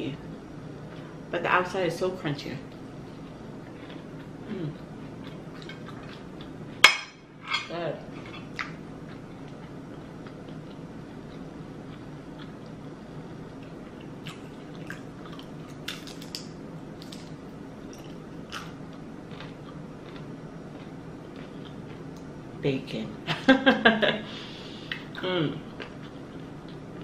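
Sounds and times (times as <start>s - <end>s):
low steady hum: 0.0s - 27.0s
chewing crispy food: 2.7s - 6.6s, 8.2s - 12.8s, 13.5s - 22.3s, 24.9s - 27.0s.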